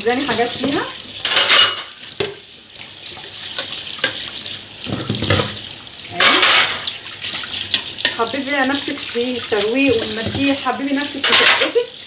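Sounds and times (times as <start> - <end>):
tap water running over dishes: 0.0 - 12.0
plates knocking: 4.9 - 5.6, 6.2 - 6.9.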